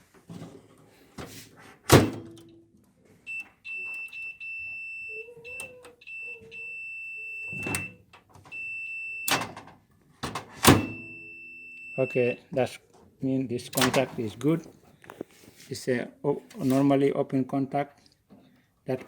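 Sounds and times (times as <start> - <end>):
microwave door thud: 1.9 - 2.4
multimeter high beep: 3.3 - 9.5, 10.8 - 12.5.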